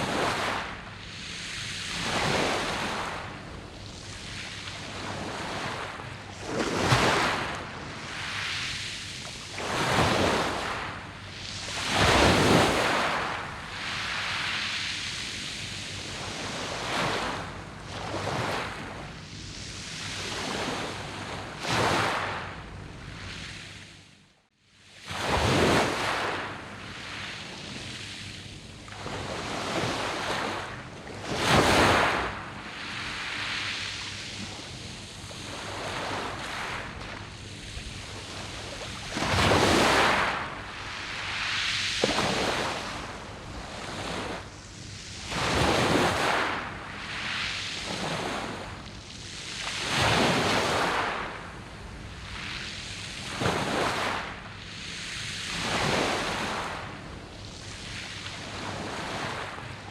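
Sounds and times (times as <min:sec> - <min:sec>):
waves breaking on pebbles: 0:35.2 - 0:44.5.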